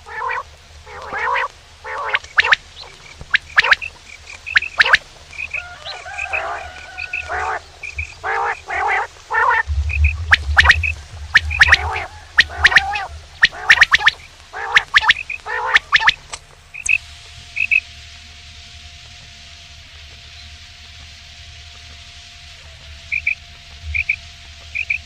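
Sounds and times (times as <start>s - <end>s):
quail calling: 0.0s - 17.0s, 17.6s - 17.8s, 22.6s - 25.0s
faint steady hum: 0.0s - 25.0s.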